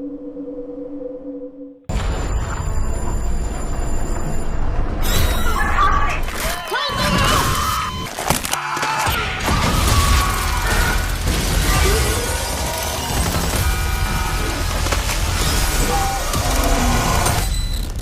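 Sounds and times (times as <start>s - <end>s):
booming crashing impacts: 9.4s - 17.5s.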